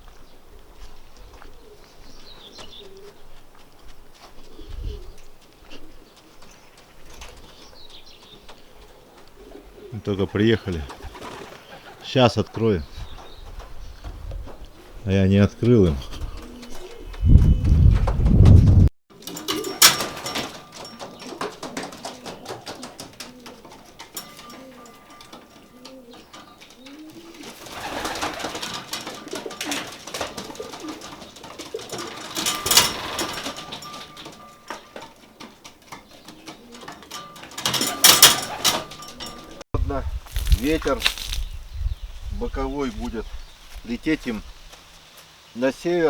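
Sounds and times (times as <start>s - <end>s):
pigeons cooing: 0.3s - 3.5s, 4.2s - 18.4s, 19.2s - 39.6s
wind buffeting microphone: 4.5s - 5.4s, 11.9s - 18.9s, 39.8s - 44.8s.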